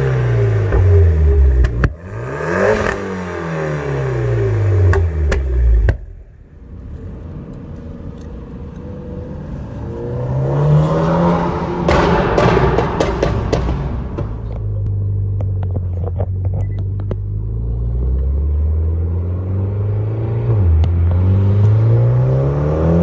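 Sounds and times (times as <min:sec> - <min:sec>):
car engine revving: 0:00.0 - 0:06.5, 0:08.8 - 0:23.0
exhaust pops and crackles: 0:00.6 - 0:02.0, 0:04.9 - 0:06.2, 0:14.2 - 0:17.3.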